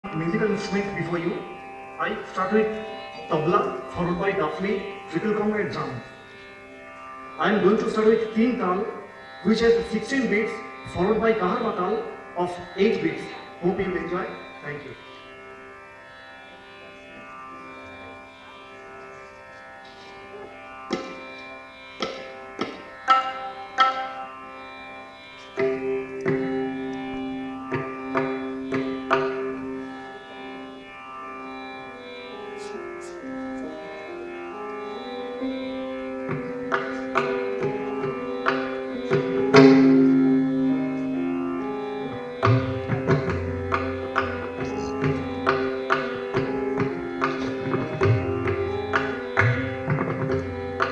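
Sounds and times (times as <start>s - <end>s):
steady drone: 0.0s - 50.9s
tabla drumming: 20.9s - 21.4s, 22.0s - 24.3s, 25.6s - 29.9s, 36.3s - 50.9s.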